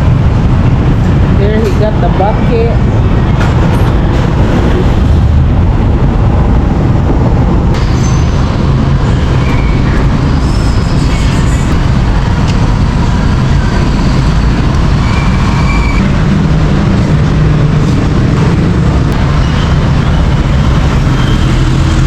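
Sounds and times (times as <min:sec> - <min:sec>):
traffic engines rumbling: 0:00.0 - 0:22.0.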